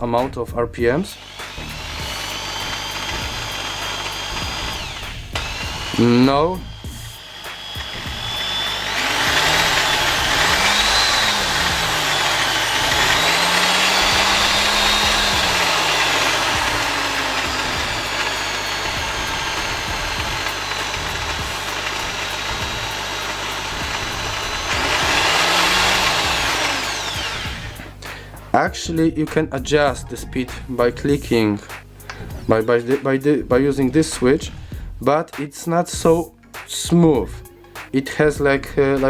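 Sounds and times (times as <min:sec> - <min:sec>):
hammer drill motor whine: 0:01.1 - 0:28.0.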